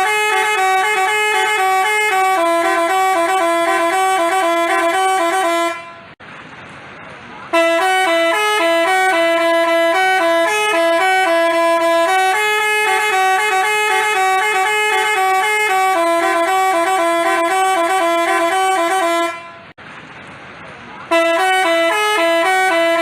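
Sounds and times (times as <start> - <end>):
bus horn playing a tune: 0.0 - 6.2, 7.5 - 19.8, 21.1 - 23.0.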